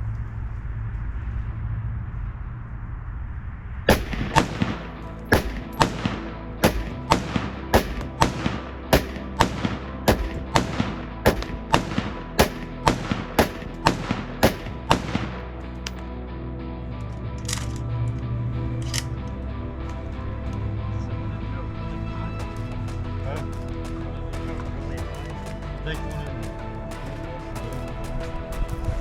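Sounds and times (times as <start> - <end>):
rifle shots: 3.9 - 16.0
background music: 3.9 - 29.0.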